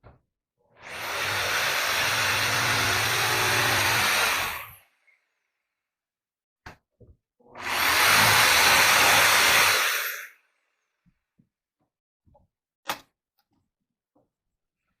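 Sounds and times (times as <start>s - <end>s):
electric power tool running: 0.9s - 4.7s.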